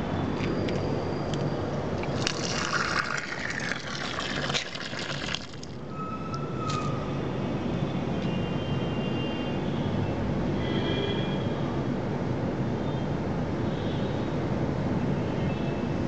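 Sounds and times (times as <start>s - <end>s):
water pouring into a container: 2.0s - 5.8s.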